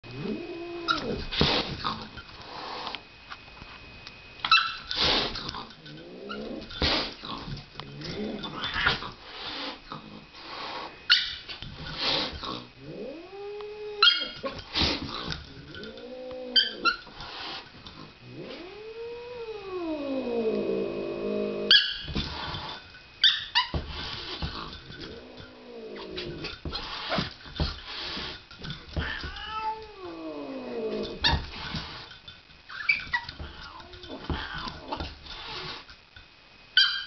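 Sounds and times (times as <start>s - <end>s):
cat yowling: 29.0s - 31.4s.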